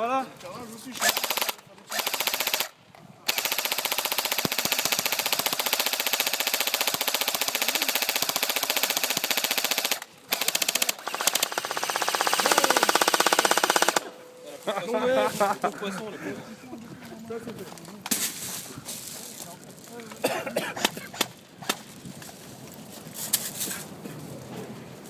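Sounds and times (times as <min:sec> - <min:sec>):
airsoft gun firing bursts: 0:01.0 - 0:14.2.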